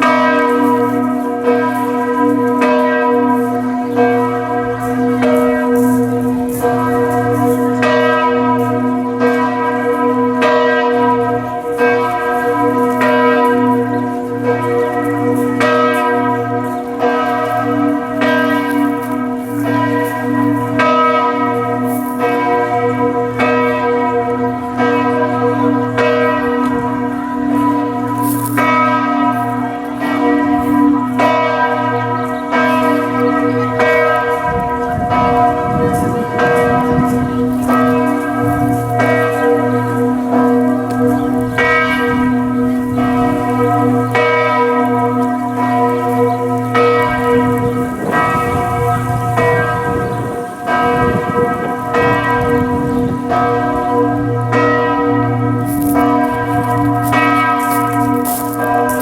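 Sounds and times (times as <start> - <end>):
church bells ringing: 0.0 - 59.0.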